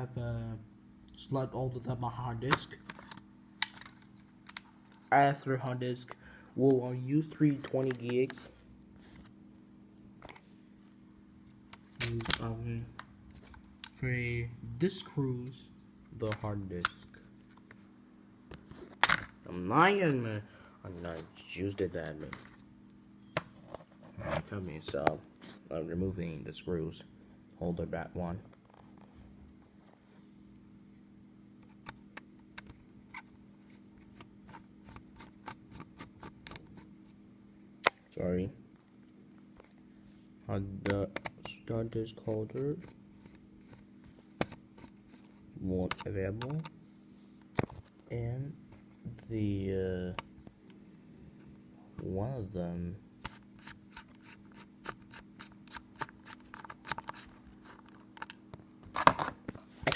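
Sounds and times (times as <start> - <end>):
steady low hum: 0.0 - 59.9
small parts clicking and scratching: 2.8 - 5.1, 53.2 - 59.3.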